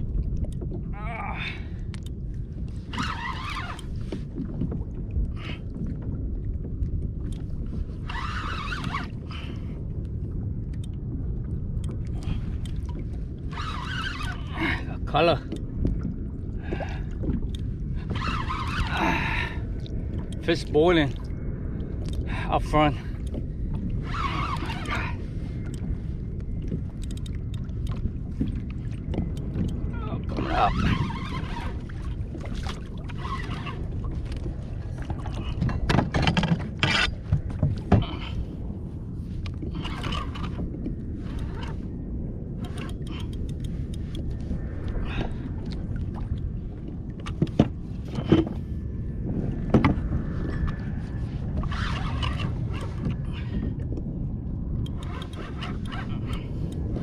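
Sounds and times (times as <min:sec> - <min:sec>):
water around a kayak: 0:00.0 - 0:57.0
wind: 0:00.0 - 0:57.0
faint light clicks: 0:01.9 - 0:02.2, 0:26.9 - 0:28.0.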